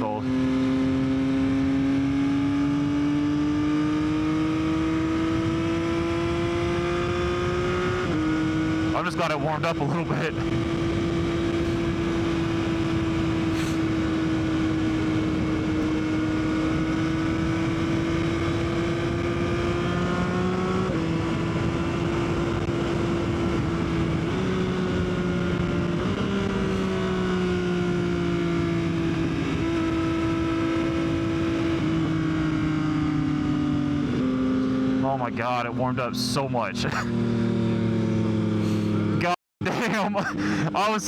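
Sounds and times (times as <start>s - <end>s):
motorcycle engine cruising: 0.0s - 41.0s.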